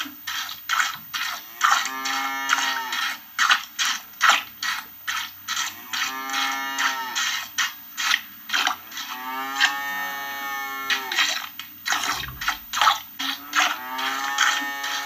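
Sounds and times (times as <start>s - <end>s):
cow mooing: 1.6s - 3.2s, 5.7s - 7.2s, 9.0s - 11.3s, 12.0s - 12.8s, 13.4s - 15.0s
milk squirting into a pail: 11.1s - 15.0s.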